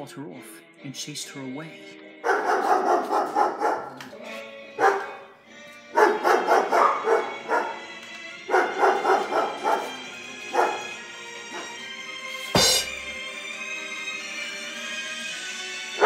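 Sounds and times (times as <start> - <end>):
background music: 0.0 - 16.0
dog barking: 2.2 - 4.0, 4.8 - 5.3, 5.9 - 7.9, 8.5 - 11.8.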